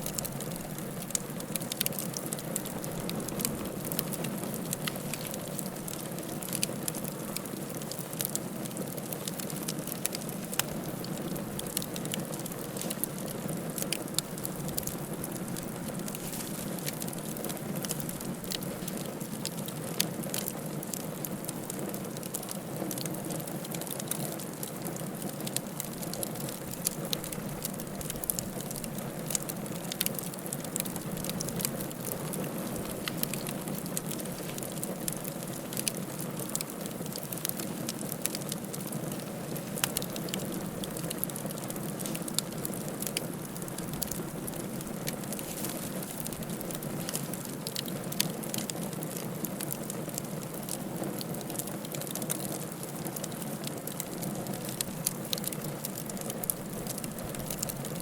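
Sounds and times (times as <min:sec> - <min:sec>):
fire pops and crackles: 0:00.0 - 0:58.0
wood fire rushing: 0:26.6 - 0:49.9.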